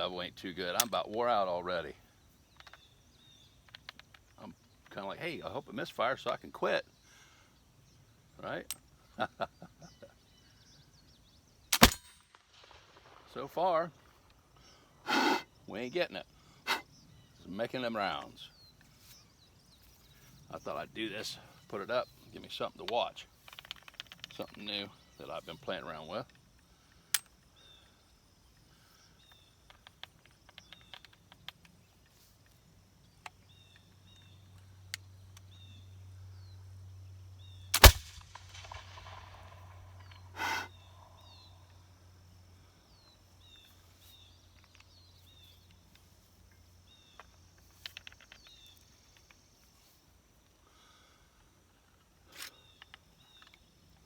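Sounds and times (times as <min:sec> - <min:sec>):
faint birds chirping: 0:00.0 - 0:54.0
pistol shot: 0:11.8 - 0:12.9, 0:37.8 - 0:39.8.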